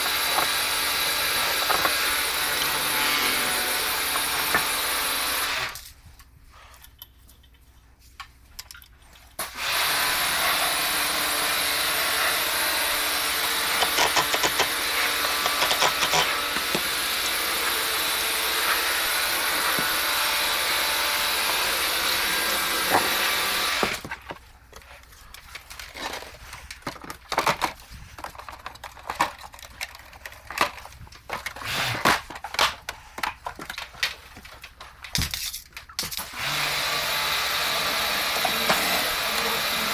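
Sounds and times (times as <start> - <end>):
parts knocking and clattering: 0.0 - 5.7, 12.5 - 36.5.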